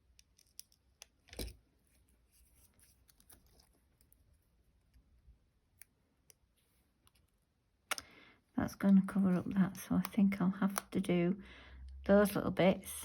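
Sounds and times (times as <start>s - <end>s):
soft clicks of paper and tools: 0.0s - 8.2s.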